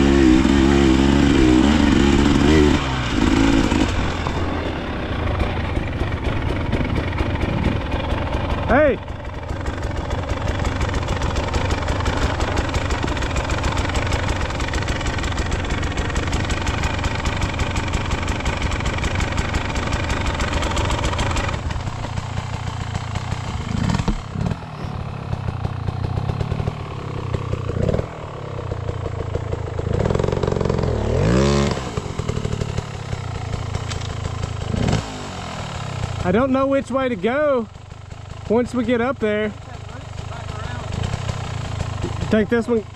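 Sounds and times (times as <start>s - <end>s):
engine revving: 0.0s - 7.8s, 23.4s - 25.0s, 26.2s - 28.4s, 29.9s - 36.4s
dirt bike engine running: 0.0s - 42.9s.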